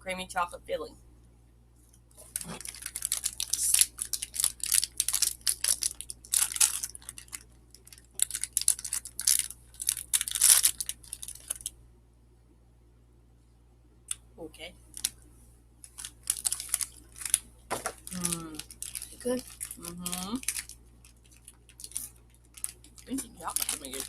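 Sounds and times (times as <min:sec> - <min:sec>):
plastic wrapper crinkling: 0:02.1 - 0:11.7, 0:14.9 - 0:15.2, 0:15.8 - 0:24.0.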